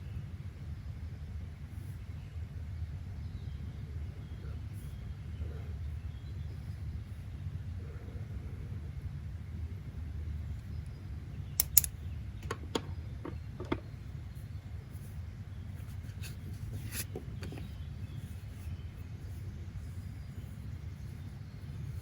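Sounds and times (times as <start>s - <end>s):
sharp clicks and taps: 11.6s - 13.8s.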